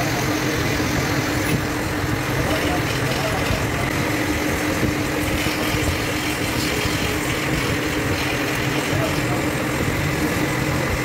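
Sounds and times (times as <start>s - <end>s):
machine humming: 0.0s - 11.0s
faint voices: 2.2s - 4.0s, 8.6s - 9.8s.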